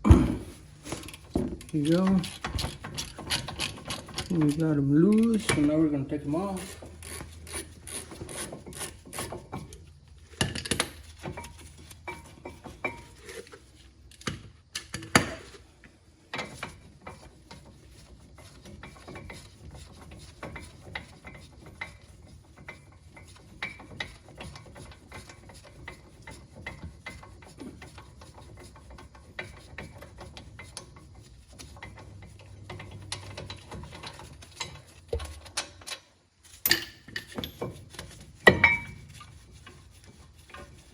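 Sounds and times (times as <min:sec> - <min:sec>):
hand ratchet clicking: 0:00.9 - 0:05.7, 0:06.4 - 0:09.4.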